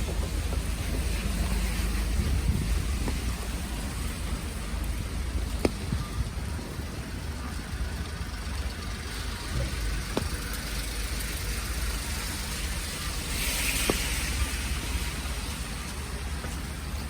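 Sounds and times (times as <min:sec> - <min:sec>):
traffic rumble and hiss: 0:00.0 - 0:17.0
car passing on wet road: 0:08.3 - 0:17.0.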